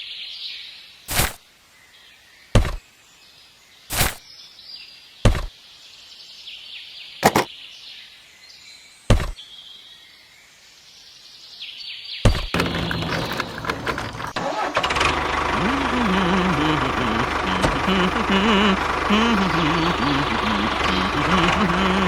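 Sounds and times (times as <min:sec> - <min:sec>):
sharp knocks: 0:02.6 - 0:02.8, 0:05.3 - 0:05.5, 0:09.1 - 0:09.4, 0:12.3 - 0:12.8.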